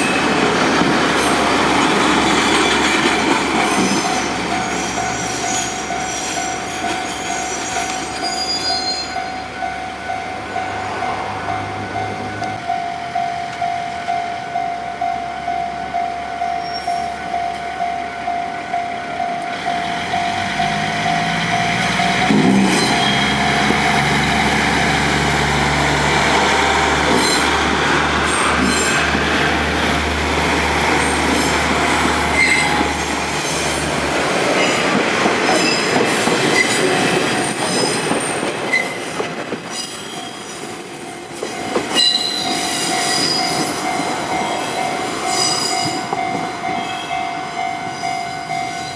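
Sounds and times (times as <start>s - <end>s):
train wheels clacking on rail joints: 0.0s - 5.5s, 19.5s - 47.0s
wheel flanges squealing: 1.2s - 9.5s, 22.0s - 24.0s, 31.0s - 33.8s, 39.7s - 40.6s, 41.5s - 48.9s.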